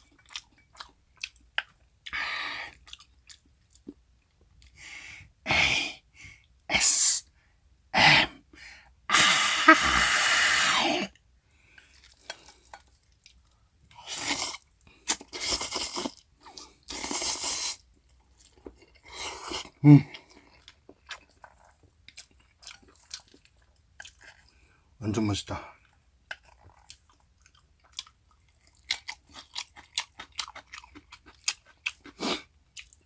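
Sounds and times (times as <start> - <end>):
chewing with wet mouth clicks: 0.0 - 4.8, 11.7 - 24.6, 25.8 - 33.0
noodle slurping: 15.2 - 17.8.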